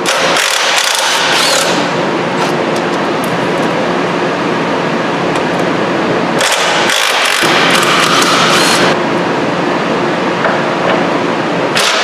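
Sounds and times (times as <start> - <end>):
air wrench running: 0.0 - 2.0.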